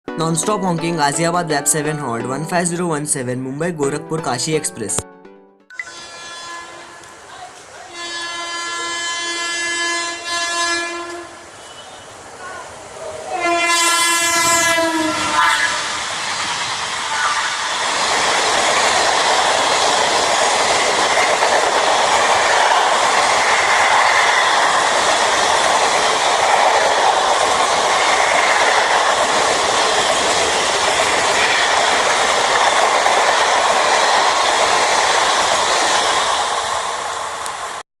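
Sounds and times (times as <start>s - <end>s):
train horn: 5.8s - 12.2s, 13.3s - 16.0s
train coaches rolling past: 5.8s - 37.8s.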